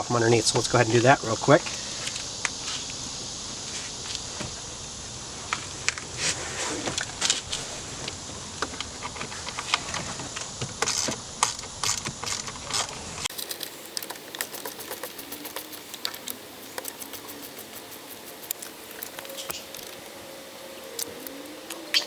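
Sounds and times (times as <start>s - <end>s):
steady hiss: 0.0s - 22.0s
socket ratchet clicking: 13.3s - 22.0s.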